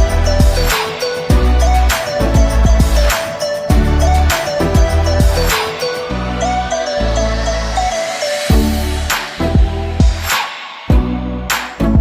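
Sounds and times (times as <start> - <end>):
sustained bass notes: 0.0 - 0.7, 1.3 - 3.1, 3.7 - 5.5, 8.5 - 10.3
synth melody: 0.0 - 10.3.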